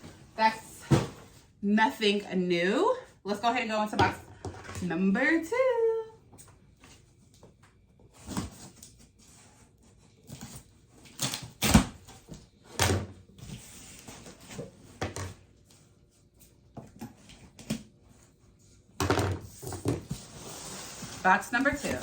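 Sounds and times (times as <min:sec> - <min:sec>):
cardboard boxes knocking and rustling: 0:00.0 - 0:01.4, 0:19.0 - 0:20.4
cardboard scraping: 0:19.5 - 0:22.0.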